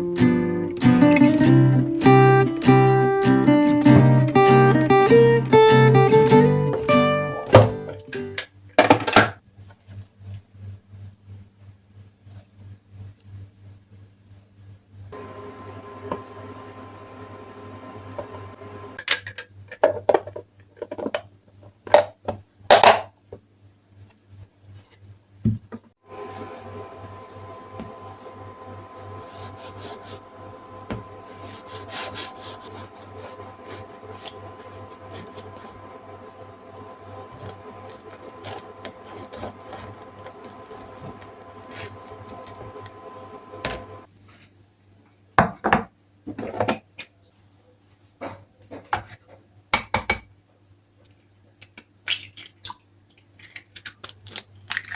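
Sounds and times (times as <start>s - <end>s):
kitchen appliance humming: 0.0s - 8.4s, 15.2s - 19.0s, 26.0s - 44.1s
short scrapes: 28.8s - 44.0s.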